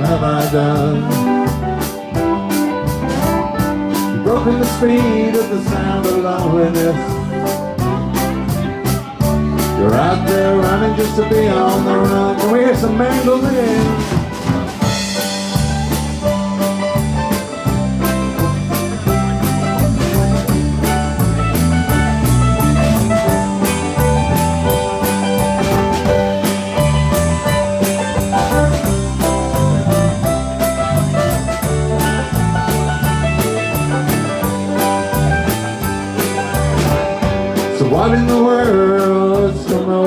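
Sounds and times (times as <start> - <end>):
bass line: 0.0 - 40.0
steady drum beat: 0.0 - 40.0
strummed guitar: 0.0 - 40.0
mandolin solo: 11.8 - 37.9.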